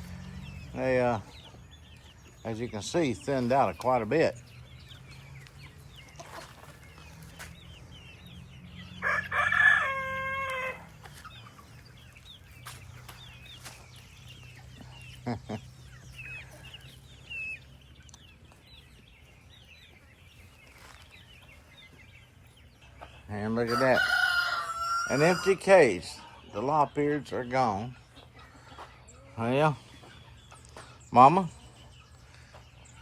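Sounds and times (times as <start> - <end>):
small birds chirping: 0.0 - 33.0
rooster crowing: 9.0 - 10.9, 23.7 - 25.6.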